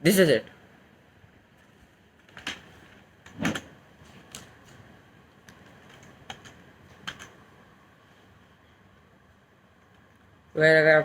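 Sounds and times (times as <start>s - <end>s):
keyboard keys clicking: 5.5s - 7.4s.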